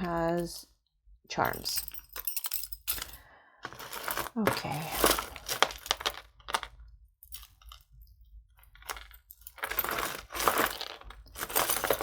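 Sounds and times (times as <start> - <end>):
jewelry clicking and clinking: 0.0 - 0.8, 1.4 - 12.0
rustling: 2.9 - 6.7, 8.9 - 12.0.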